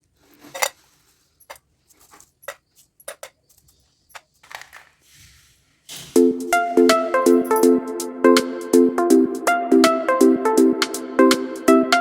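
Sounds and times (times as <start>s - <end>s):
soft rustle: 0.0s - 6.2s
kitchen utensils clinking: 0.3s - 3.5s.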